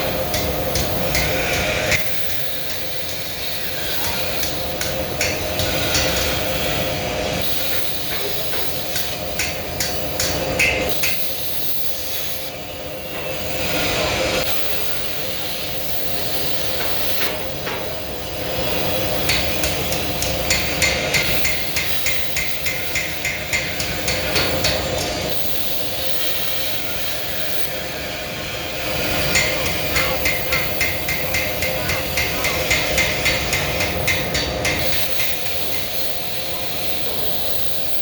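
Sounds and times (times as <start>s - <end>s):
hammer striking metal: 0.0s - 3.3s, 4.0s - 6.6s, 7.6s - 11.3s, 19.2s - 25.2s, 29.2s - 35.6s.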